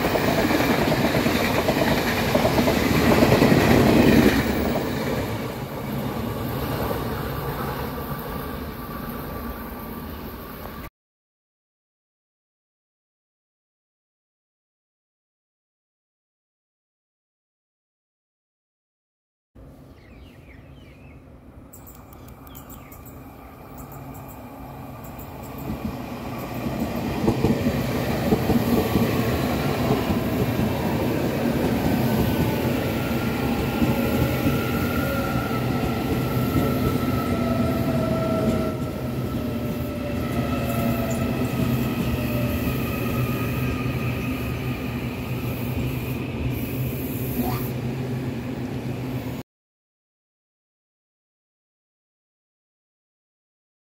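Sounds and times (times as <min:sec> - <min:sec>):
train running past on rails: 0:00.0 - 0:10.9, 0:19.6 - 0:49.4.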